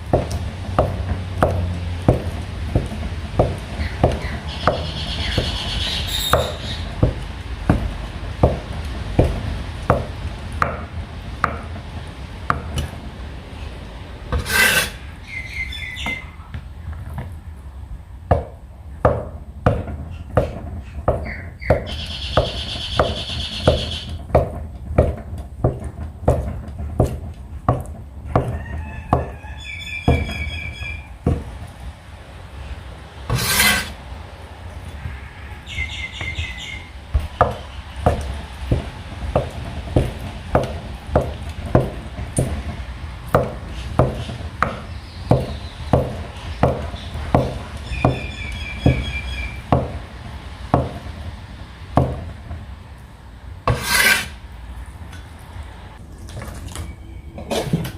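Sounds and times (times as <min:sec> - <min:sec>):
birds chirping: 0:03.6 - 0:07.1, 0:15.0 - 0:17.1, 0:20.1 - 0:24.2, 0:28.6 - 0:31.4, 0:34.9 - 0:38.6, 0:43.5 - 0:49.9.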